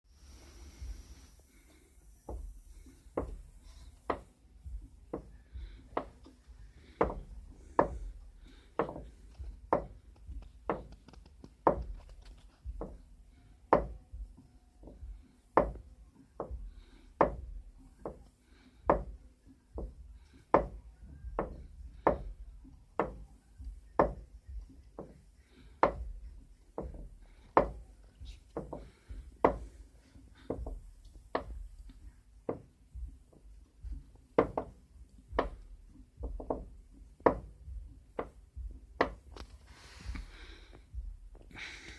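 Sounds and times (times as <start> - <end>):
strut mount knocking: 2.3 - 13.1, 25.8 - 41.6
low rumble: 35.3 - 41.7.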